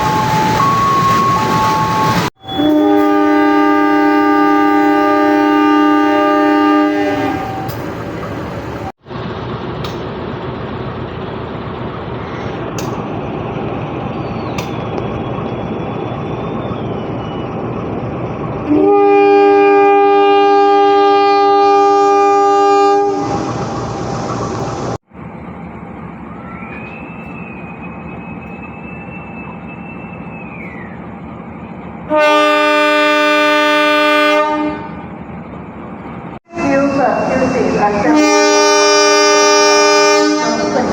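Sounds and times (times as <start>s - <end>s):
locomotive air horn blasts: 2.5s - 7.8s, 18.7s - 23.5s, 32.1s - 35.0s, 36.5s - 40.9s.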